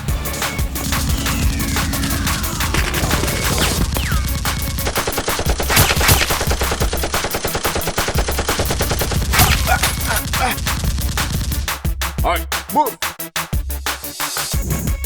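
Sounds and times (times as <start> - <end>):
rapid automatic gunfire: 0.9 - 11.8.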